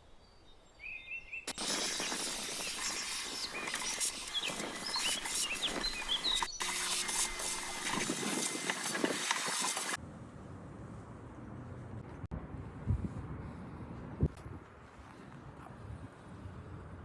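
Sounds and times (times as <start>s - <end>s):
small birds chirping: 0.0s - 10.0s
dense hiss: 1.5s - 10.0s
scratchy clicks: 1.5s - 10.0s.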